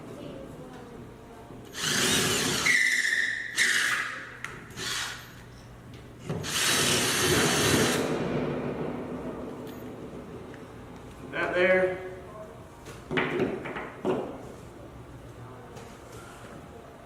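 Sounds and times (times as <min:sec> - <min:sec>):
power drill driving screws: 0:01.7 - 0:04.1, 0:04.7 - 0:05.4, 0:06.4 - 0:08.0.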